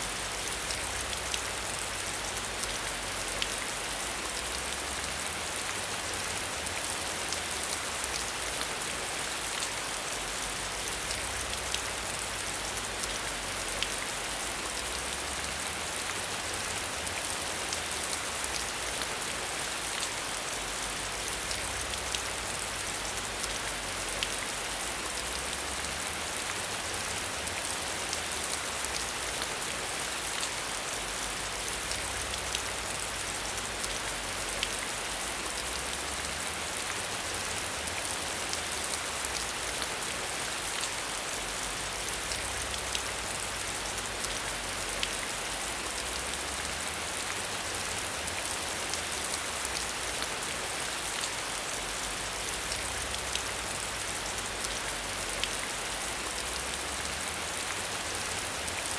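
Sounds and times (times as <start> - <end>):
steady rain: 0.0 - 58.9.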